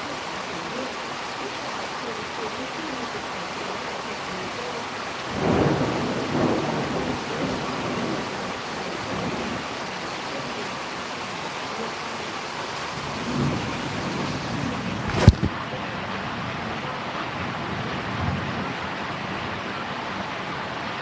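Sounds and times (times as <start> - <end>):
steady rain: 0.0 - 21.0
low thunder rumble: 5.3 - 9.7.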